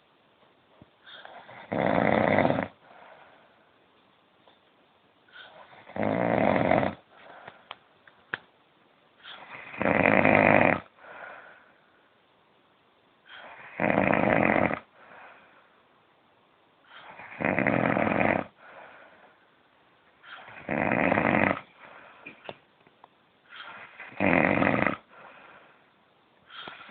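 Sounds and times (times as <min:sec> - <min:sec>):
man snoring: 0:01.4 - 0:02.8, 0:05.7 - 0:07.0, 0:09.4 - 0:10.9, 0:13.4 - 0:14.9, 0:17.0 - 0:18.6, 0:20.4 - 0:21.7, 0:23.7 - 0:25.1.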